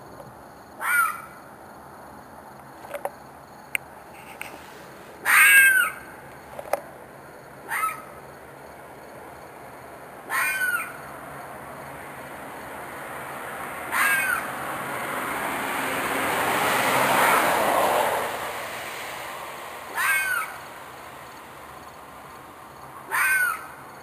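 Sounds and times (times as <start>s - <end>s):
animal screeching cries: 0.8s - 1.3s, 5.2s - 6.1s, 7.7s - 8.1s, 10.3s - 11.0s, 13.9s - 14.5s, 19.9s - 20.6s, 23.1s - 23.8s.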